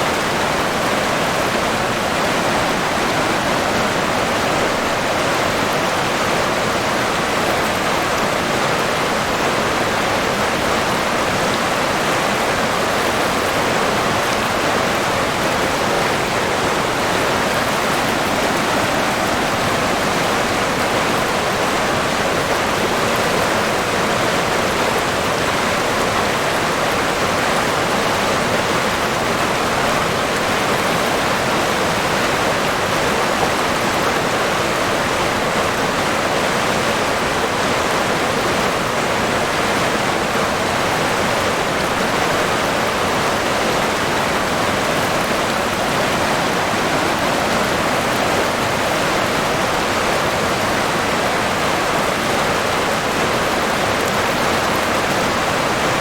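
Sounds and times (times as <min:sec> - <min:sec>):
river water rushing: 0:00.0 - 0:56.0.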